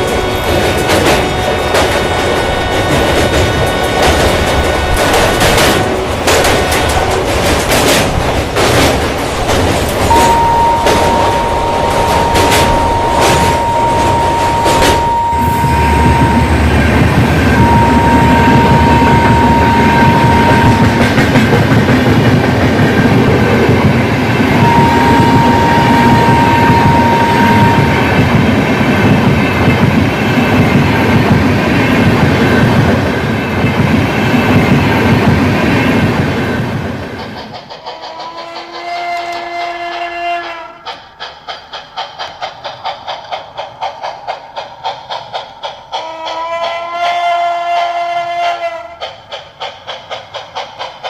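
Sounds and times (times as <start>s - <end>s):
train wheels rattling on track: 0.0s - 51.0s
steady high tone: 10.1s - 21.4s, 24.6s - 28.6s.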